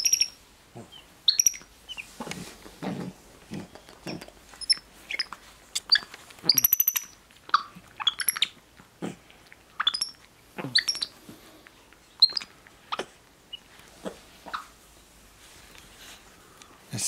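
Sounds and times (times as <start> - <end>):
monkey squeaks and chirps: 0.0 - 0.4, 1.3 - 2.1, 4.0 - 8.6, 9.8 - 11.2, 12.2 - 13.7.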